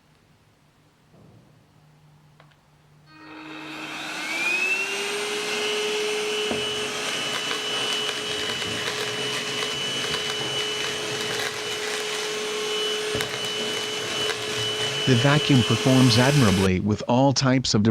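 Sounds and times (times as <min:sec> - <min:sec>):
handheld vacuum cleaner motor: 0:03.1 - 0:16.8.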